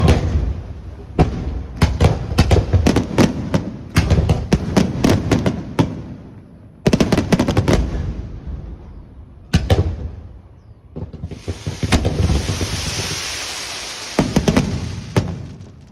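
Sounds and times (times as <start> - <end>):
fireworks bursting: 10.9 - 15.9.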